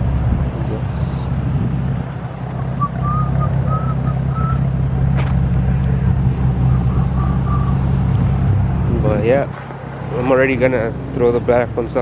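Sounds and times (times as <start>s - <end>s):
car engine droning: 0.0s - 12.0s.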